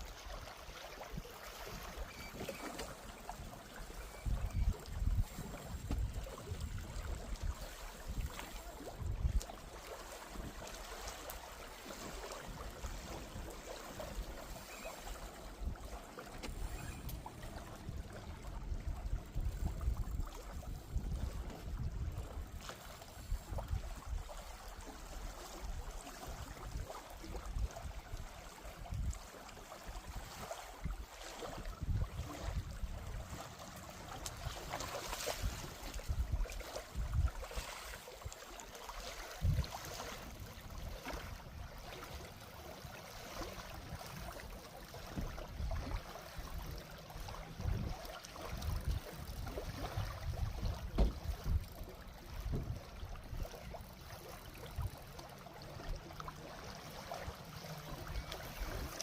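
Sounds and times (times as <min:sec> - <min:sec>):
wind buffeting microphone: 0:16.5 - 0:24.4, 0:30.0 - 0:37.7, 0:39.3 - 0:41.3, 0:45.2 - 0:53.8.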